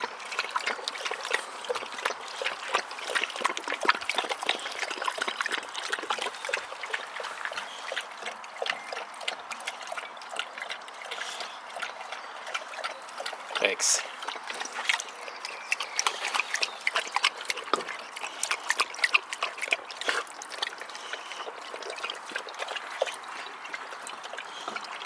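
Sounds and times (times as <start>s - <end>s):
dog splashing in water: 0.0s - 25.0s
water trickling and splashing: 0.0s - 25.0s.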